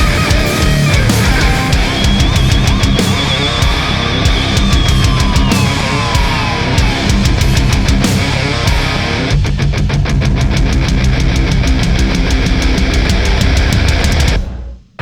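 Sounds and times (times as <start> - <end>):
pounding drums: 0.0 - 9.8
heavy metal music: 0.0 - 15.0.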